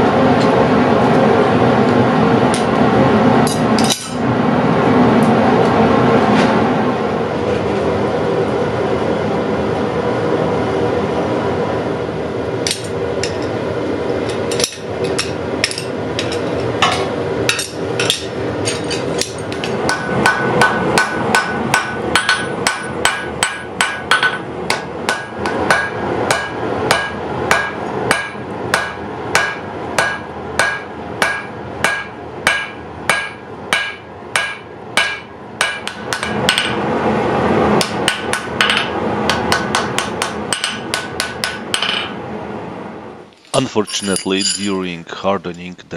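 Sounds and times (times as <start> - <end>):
hammer striking steel on anvil: 14.4 - 36.8, 37.8 - 42.2.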